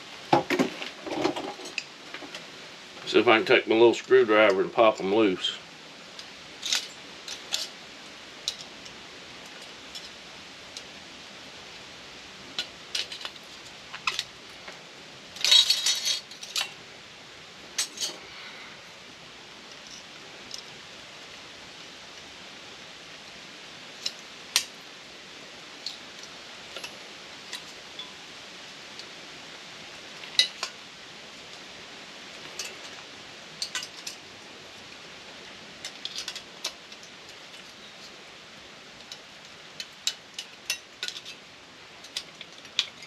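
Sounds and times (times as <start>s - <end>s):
steady hiss: 0.0s - 43.0s.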